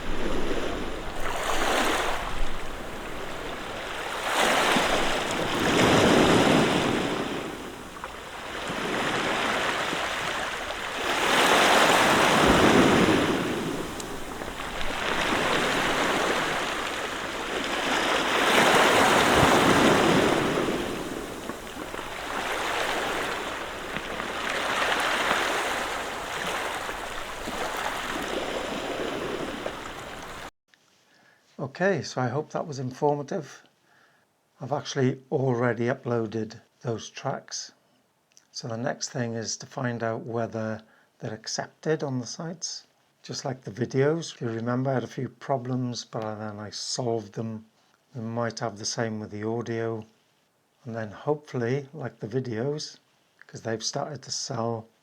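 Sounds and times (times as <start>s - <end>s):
waves breaking on pebble beach: 0.0s - 30.5s.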